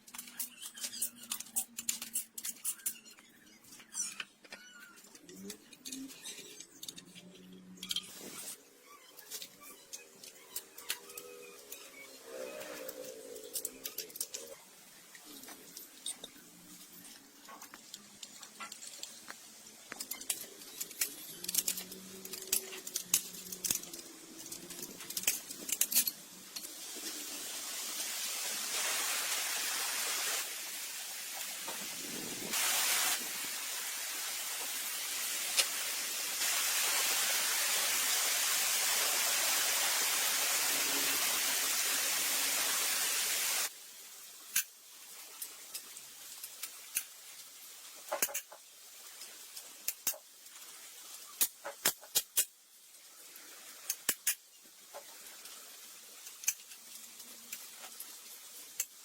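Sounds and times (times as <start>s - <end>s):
spraying hiss: 23.2s - 43.8s.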